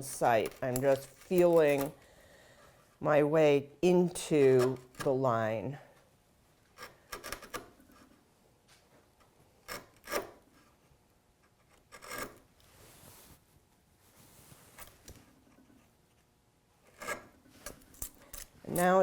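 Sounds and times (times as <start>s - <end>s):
chisel scraping wood: 6.7s - 8.2s, 9.6s - 10.8s, 11.4s - 12.5s, 15.4s - 18.2s.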